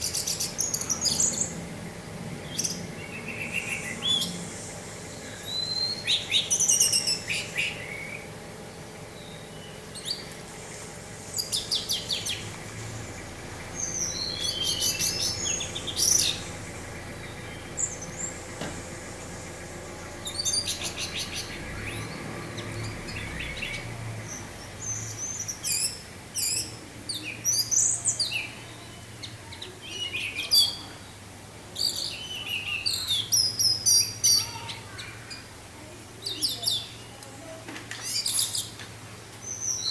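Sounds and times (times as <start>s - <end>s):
steady low hum: 0.0s - 34.2s.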